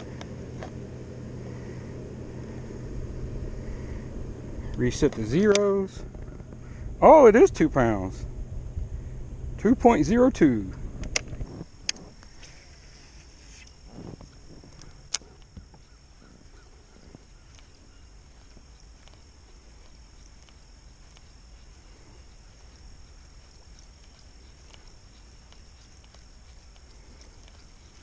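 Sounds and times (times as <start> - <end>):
high-pitched insect drone: 0.0 - 28.0
low wind rumble: 0.0 - 28.0
sharp click: 5.0 - 5.8, 11.0 - 12.1.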